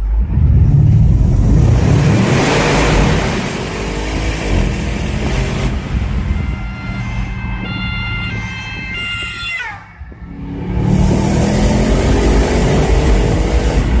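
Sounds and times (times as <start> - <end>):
car engine accelerating hard: 0.0 - 6.4, 10.2 - 14.0.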